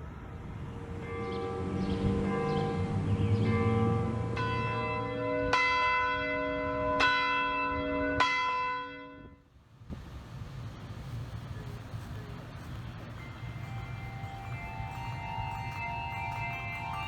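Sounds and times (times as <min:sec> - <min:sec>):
church bells ringing: 0:00.0 - 0:09.4, 0:13.0 - 0:17.0.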